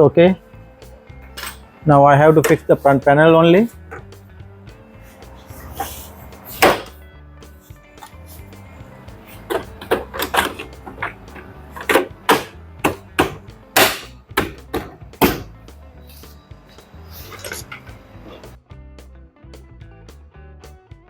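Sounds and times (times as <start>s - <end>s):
background music: 0.0s - 21.0s
knocks on dryer panel: 6.6s - 7.0s, 11.9s - 15.5s.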